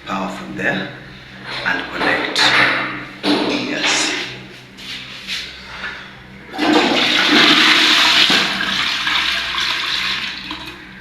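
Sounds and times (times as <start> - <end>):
toilet flushing: 6.4 - 11.0.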